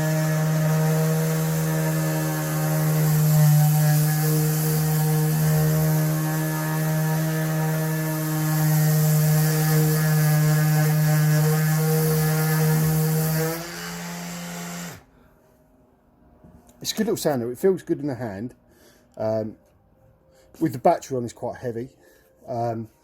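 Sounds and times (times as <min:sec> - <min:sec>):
orbital sander humming: 0:00.0 - 0:15.1.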